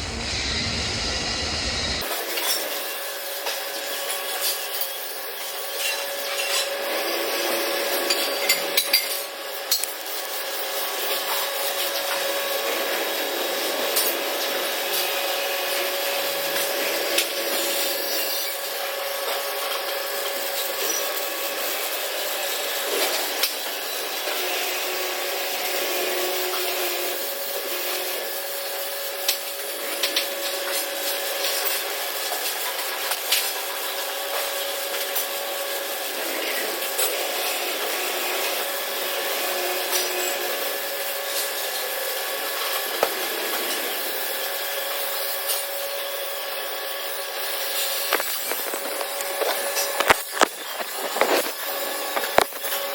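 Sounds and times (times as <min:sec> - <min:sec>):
welding arc hissing: 0:00.0 - 0:24.0, 0:36.8 - 0:52.9
welding sparks popping: 0:09.6 - 0:12.0, 0:47.1 - 0:52.9.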